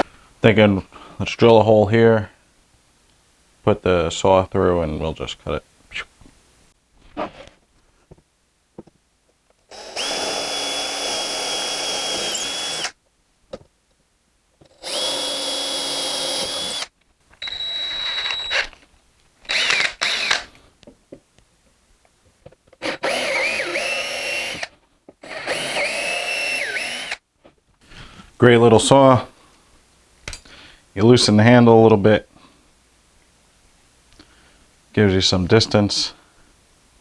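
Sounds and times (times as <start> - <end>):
power drill boring wood: 9.7 - 13.0, 14.7 - 18.7, 19.4 - 20.5, 22.8 - 27.2.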